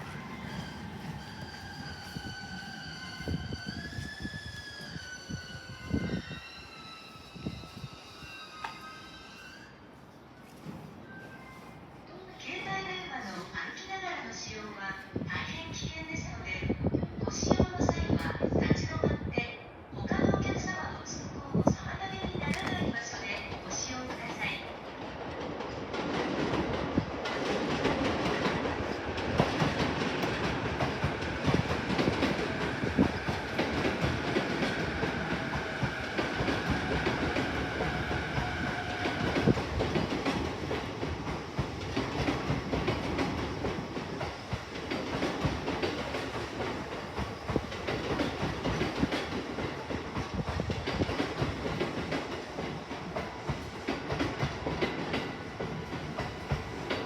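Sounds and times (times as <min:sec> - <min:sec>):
train wheels clattering over rails: 0:22.2 - 0:57.0.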